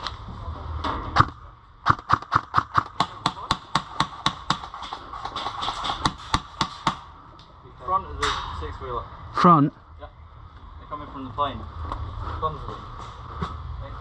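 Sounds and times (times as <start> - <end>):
airsoft gun firing: 5.6 - 7.1.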